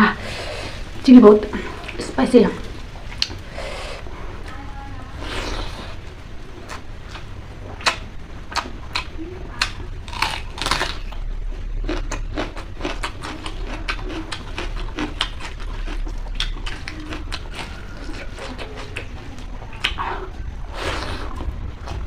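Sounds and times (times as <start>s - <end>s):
steady low hum: 0.0s - 22.0s
chewing and crunching food: 6.6s - 22.0s.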